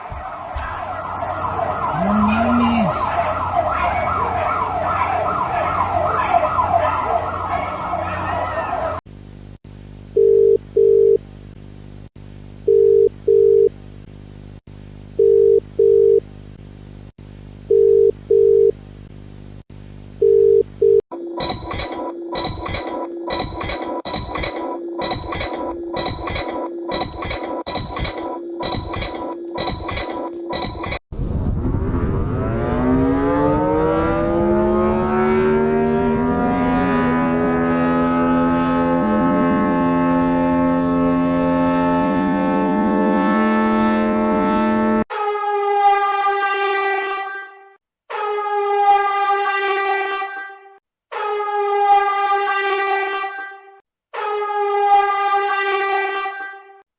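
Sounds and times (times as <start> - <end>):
second steady siren tone: 0.0 - 9.0, 21.1 - 31.0, 32.5 - 45.0
short low alarm beeps: 20.9 - 31.0
alarm tone with high strikes: 21.1 - 31.0
steady hum: 21.1 - 31.0
warning siren winding up: 21.1 - 31.0.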